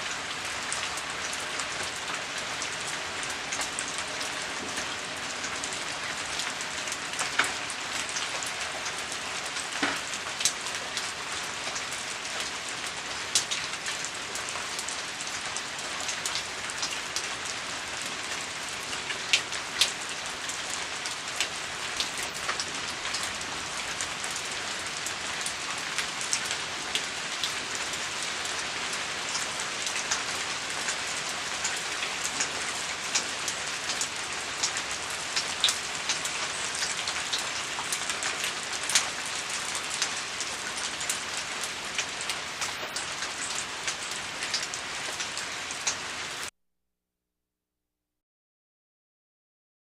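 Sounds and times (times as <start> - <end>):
steady rain hiss: 0.0 - 46.5
raindrops ticking: 19.0 - 28.0, 29.2 - 46.5.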